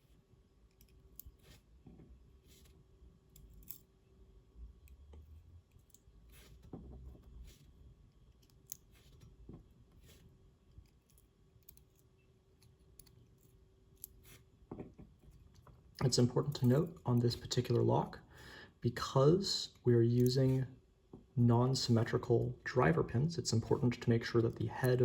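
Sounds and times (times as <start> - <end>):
small metallic clicks: 8.3 - 9.3, 10.7 - 14.2.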